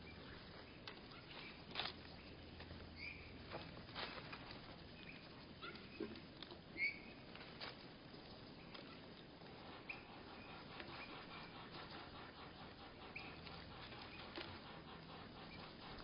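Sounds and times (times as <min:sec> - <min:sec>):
slowed bird chirps: 0:06.7 - 0:07.3, 0:09.6 - 0:16.0.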